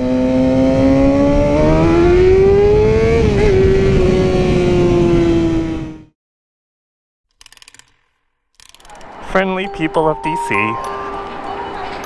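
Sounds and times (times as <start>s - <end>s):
low wind rumble: 0.0s - 6.1s
motorcycle engine revving: 0.0s - 6.1s.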